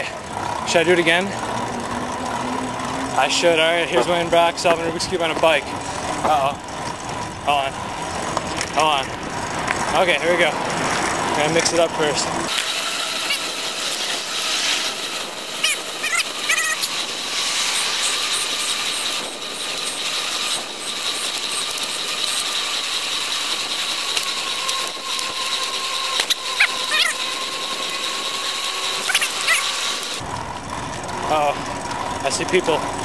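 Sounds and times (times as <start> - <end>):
ratcheting mechanical clicking: 12.5 - 33.0.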